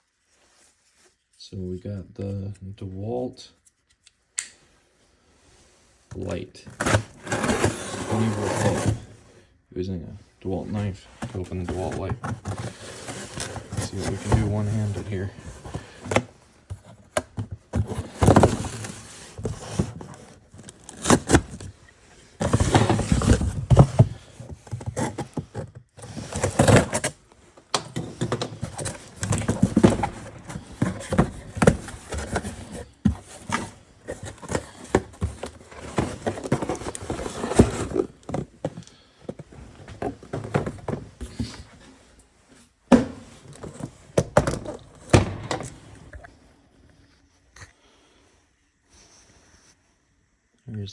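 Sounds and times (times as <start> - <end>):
knife scraping packaging: 6.8 - 9.1, 12.2 - 16.2, 17.7 - 21.7, 22.4 - 27.2, 27.9 - 38.4
box knocking and thunking: 11.2 - 21.7, 22.4 - 41.7, 42.9 - 46.2.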